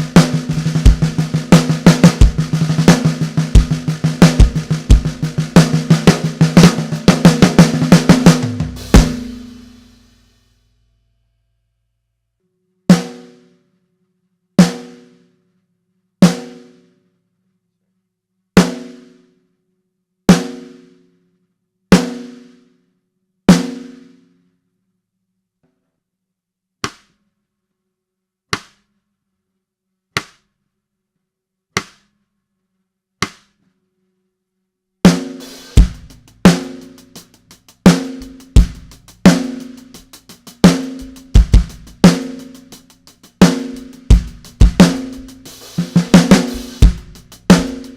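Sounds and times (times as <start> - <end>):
snare drum strokes ringing: 0.0 - 9.9, 35.1 - 47.9
drum kit groove: 0.0 - 10.2, 35.1 - 47.9.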